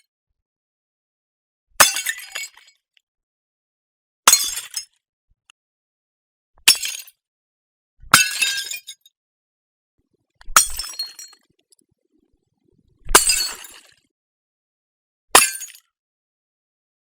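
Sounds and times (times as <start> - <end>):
glass bottle breaking: 10.5 - 11.4, 13.1 - 13.8, 15.4 - 15.8.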